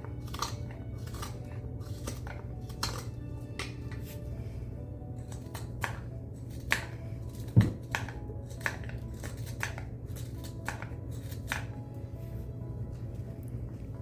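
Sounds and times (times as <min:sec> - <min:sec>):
hand tools cutting wood: 0:06.6 - 0:11.8.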